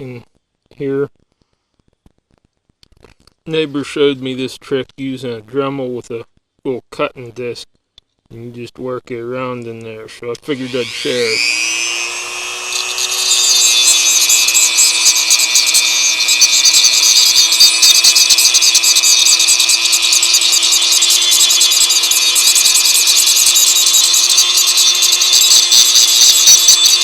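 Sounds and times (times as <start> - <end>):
rotary tool grinding metal: 10.5 - 27.0.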